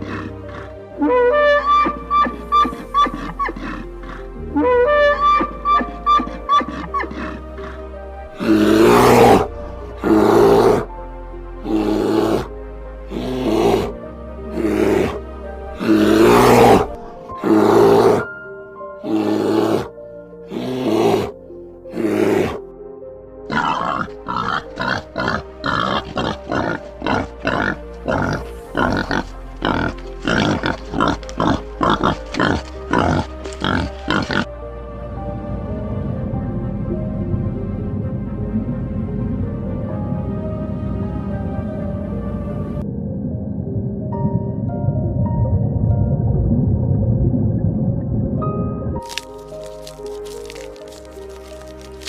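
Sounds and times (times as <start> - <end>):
animal roaring: 0.0 - 0.8, 6.2 - 7.8, 8.4 - 10.9, 11.6 - 12.5, 13.1 - 15.2, 15.8 - 18.3, 19.0 - 19.9, 20.5 - 22.6, 23.5 - 34.5
pig grunting: 0.0 - 0.8, 2.6 - 4.3, 5.7 - 10.9, 11.6 - 12.5, 13.1 - 13.9, 14.5 - 18.3, 19.0 - 19.9, 20.5 - 22.6, 23.5 - 34.5
background music: 0.0 - 52.0.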